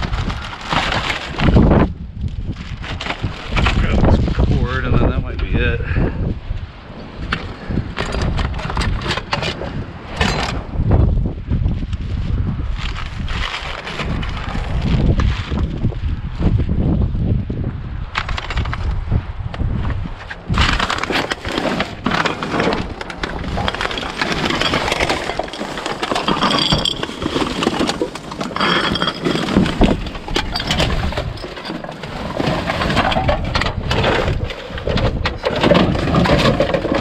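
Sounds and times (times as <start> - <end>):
junk knocking and clinking: 20.6 - 37.0.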